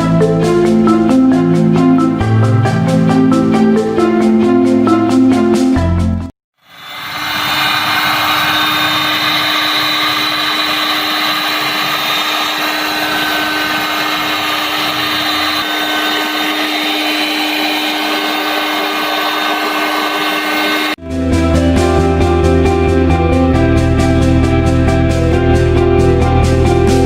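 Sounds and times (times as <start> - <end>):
power tool humming and whining: 6.6 - 21.0.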